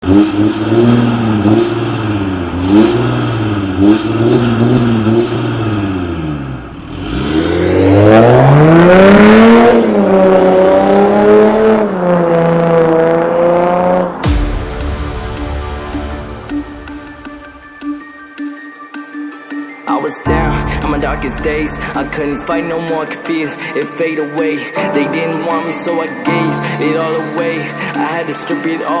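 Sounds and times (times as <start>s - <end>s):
car engine revving: 0.0s - 17.6s, 20.3s - 24.0s.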